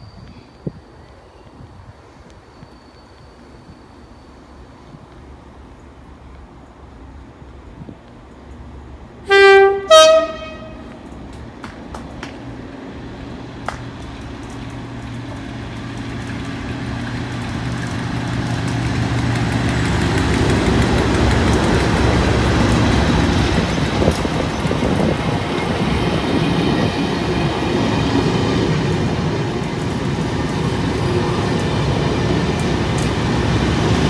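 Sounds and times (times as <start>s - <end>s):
diesel locomotive engine drone: 0.0s - 34.0s
rail noise: 0.0s - 34.0s
two-tone train horn: 9.3s - 11.0s.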